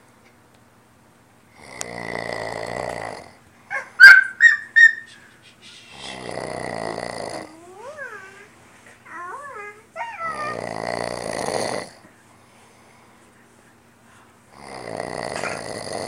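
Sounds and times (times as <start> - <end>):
man snoring: 1.5 - 3.4, 5.9 - 7.6, 10.2 - 12.0, 14.5 - 16.0.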